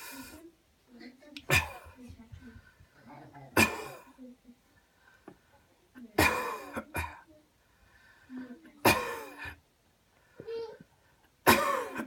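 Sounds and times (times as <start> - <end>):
person coughing: 1.5 - 2.0, 3.6 - 4.1, 6.2 - 7.2, 8.8 - 9.6, 11.4 - 12.0.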